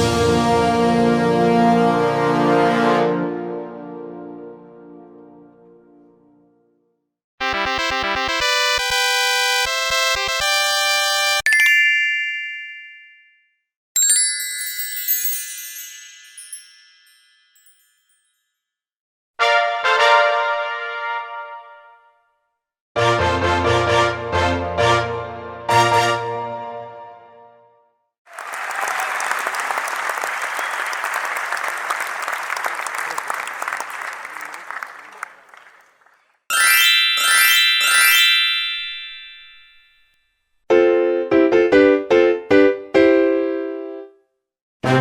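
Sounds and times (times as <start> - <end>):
sparkling high chime tones: 11.5 - 13.3, 14.0 - 18.7, 36.5 - 40.1
crowd applauding: 28.3 - 36.4.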